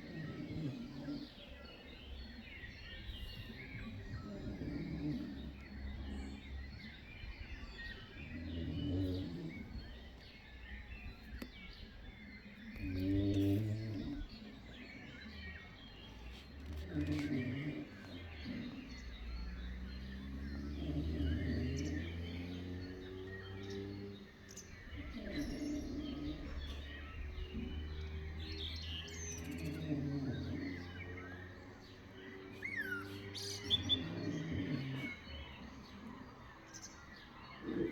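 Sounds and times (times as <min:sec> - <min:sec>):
birds chirping: 0:00.0 - 0:37.9.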